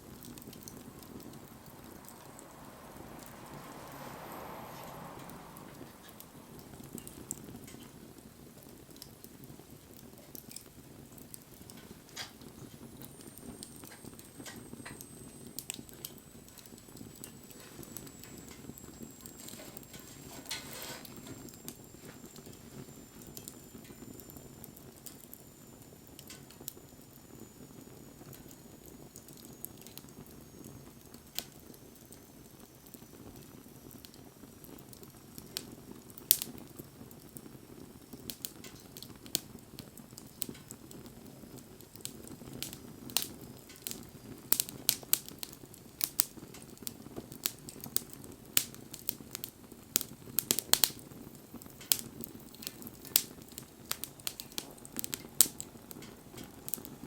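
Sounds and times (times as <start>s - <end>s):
fire crackling and popping: 0.0s - 57.0s
fire flames rushing: 0.0s - 57.0s.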